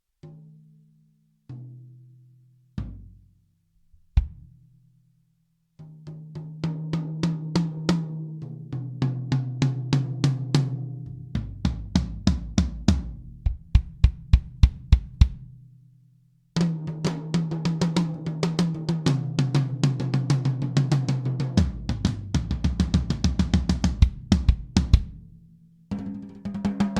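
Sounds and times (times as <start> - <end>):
drum kit groove with fills: 4.2 - 4.5, 11.4 - 15.5, 16.6 - 25.2.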